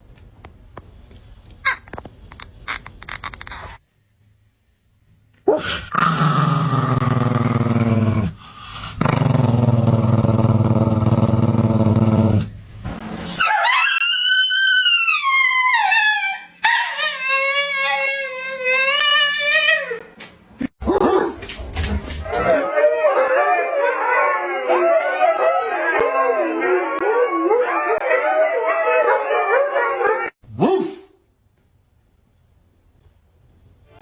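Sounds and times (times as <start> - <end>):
dog howling: 13.4 - 20.0, 22.2 - 30.4.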